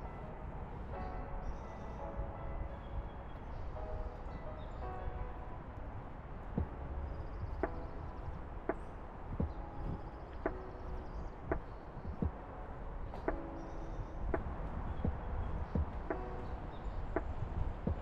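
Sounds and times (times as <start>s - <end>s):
walking footsteps: 6.6s - 6.8s, 15.0s - 16.3s, 17.2s - 18.0s.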